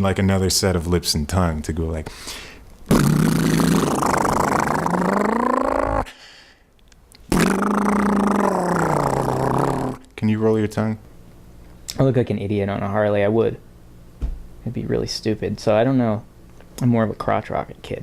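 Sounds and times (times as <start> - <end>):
person imitating motorcycle engine: 2.9 - 6.2, 7.2 - 10.1.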